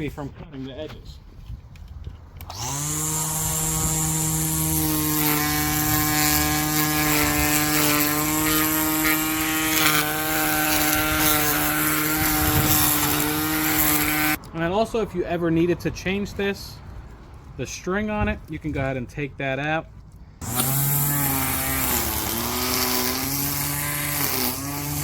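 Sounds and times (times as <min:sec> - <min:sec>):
string trimmer running: 0:02.4 - 0:14.4, 0:20.4 - 0:25.0
whirling trimmer line hiss: 0:02.5 - 0:14.4, 0:20.4 - 0:25.0.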